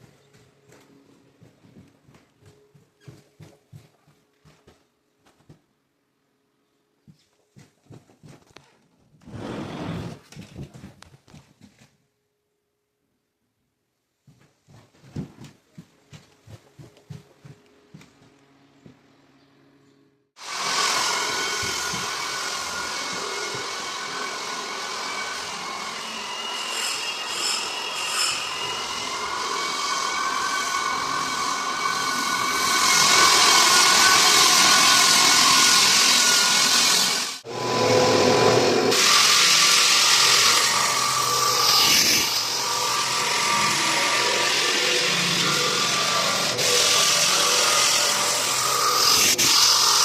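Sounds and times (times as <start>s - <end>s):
power tool working on wood: 20.4s - 50.0s.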